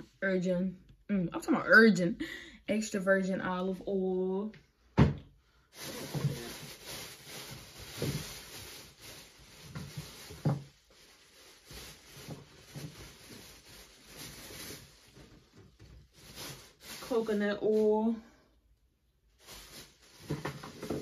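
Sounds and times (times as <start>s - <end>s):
objects being handled: 5.8s - 17.8s, 19.4s - 21.0s.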